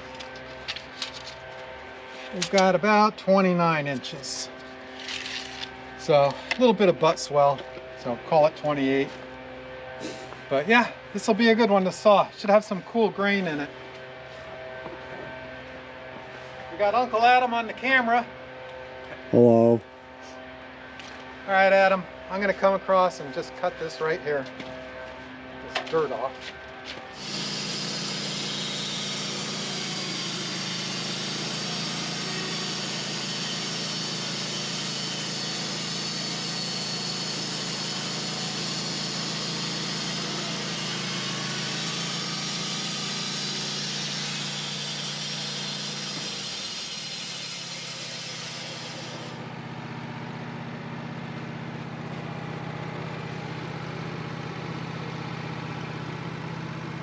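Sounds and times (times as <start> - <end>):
sawmill engine running: 0.0 - 19.7, 20.3 - 57.0
band blade cutting log hiss: 27.2 - 49.4.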